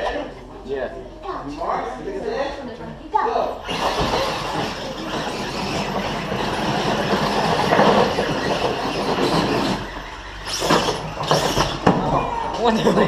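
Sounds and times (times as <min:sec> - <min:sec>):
off-road vehicle engine rumble: 0:03.7 - 0:13.0
vehicle rattling and clatter: 0:03.7 - 0:13.0.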